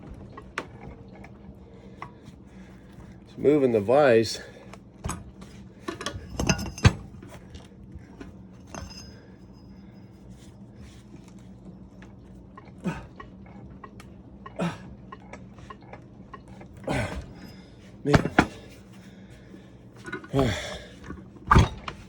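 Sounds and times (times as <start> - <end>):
vise creaking under strain: 4.6 - 9.8, 19.9 - 22.0
metal clank: 5.9 - 7.2, 8.6 - 9.2, 18.1 - 18.8, 21.5 - 22.0.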